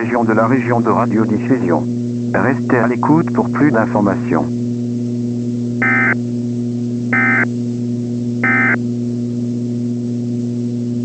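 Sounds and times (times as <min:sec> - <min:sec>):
low electrical hum: 0:00.0 - 0:11.0
digital data tone bursts: 0:05.8 - 0:06.2, 0:07.2 - 0:07.5, 0:08.4 - 0:08.8.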